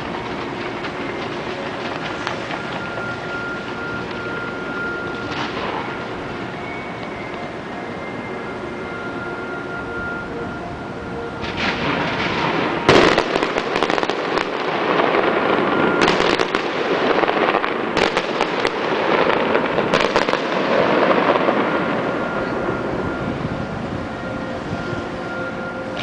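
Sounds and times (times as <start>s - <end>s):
fireworks crackle and rumble: 0.0s - 26.0s
firework shells bursting: 11.4s - 21.9s.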